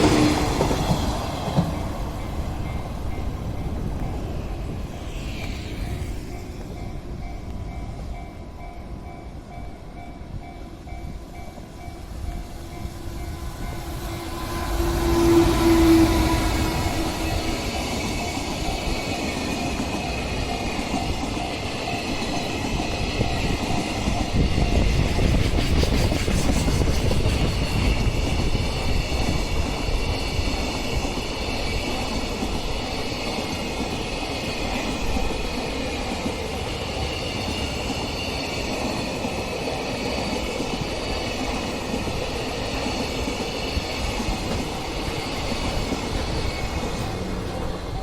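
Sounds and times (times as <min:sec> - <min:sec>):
train wheels clattering on rails: 0:00.0 - 0:48.0
high wheel squeal: 0:42.2 - 0:48.0.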